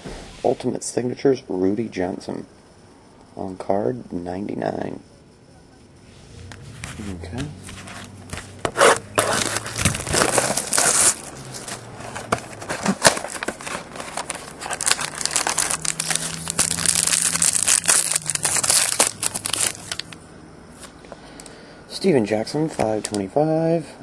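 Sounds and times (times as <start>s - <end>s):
card pack wrapper crinkling: 7.6s - 20.2s.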